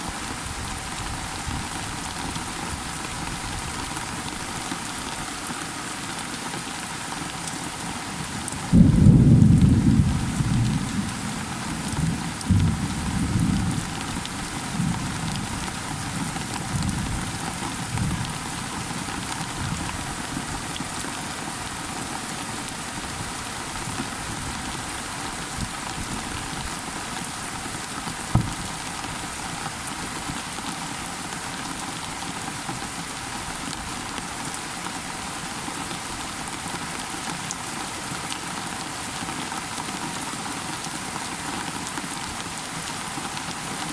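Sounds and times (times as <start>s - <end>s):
heavy rain falling: 0.0s - 43.9s
thunder rumbling: 8.7s - 18.6s, 28.2s - 29.0s
short low thump: 28.3s - 28.7s.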